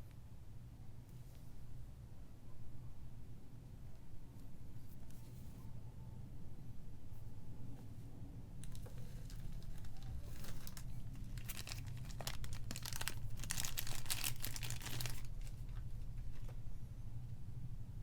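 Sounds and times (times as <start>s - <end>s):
packaging crinkling: 8.6s - 15.9s.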